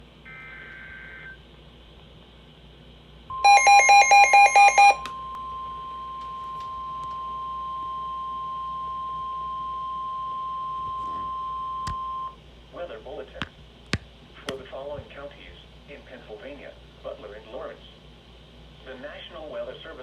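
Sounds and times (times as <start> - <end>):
steady warning tone: 3.3 - 12.4
rapid loud beeping: 3.4 - 5.0.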